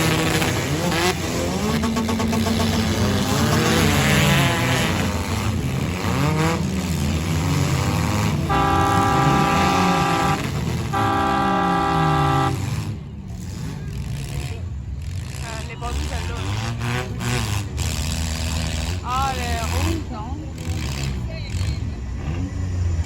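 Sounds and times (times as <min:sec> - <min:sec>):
car engines revving: 0:00.0 - 0:23.0
horn blasts: 0:08.1 - 0:13.0.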